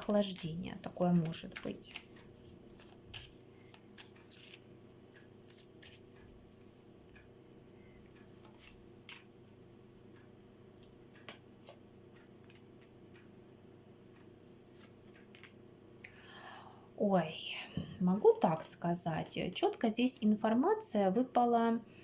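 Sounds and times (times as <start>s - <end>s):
cards clicking and tapping: 0.0s - 6.7s, 8.2s - 9.3s, 11.2s - 11.8s, 12.4s - 13.3s, 14.8s - 15.6s
steady low hum: 0.0s - 22.0s.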